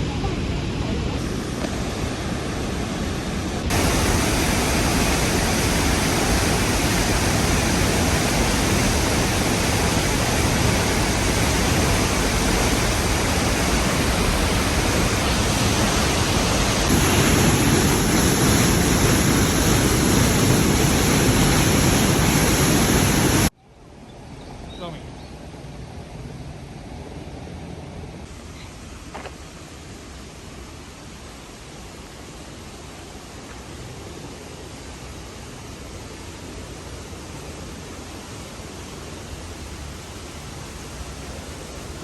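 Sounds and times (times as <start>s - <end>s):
waterfall rushing through gorge: 3.6s - 23.6s.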